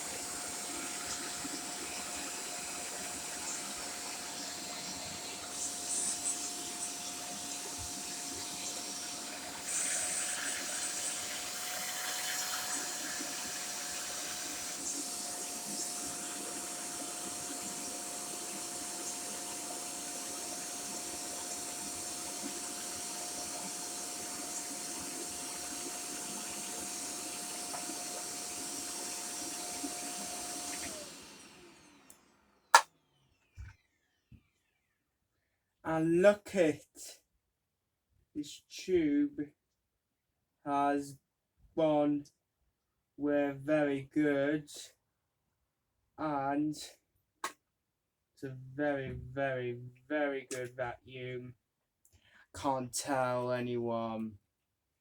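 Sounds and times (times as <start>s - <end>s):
vacuum cleaner whine and hiss: 0.0s - 34.4s.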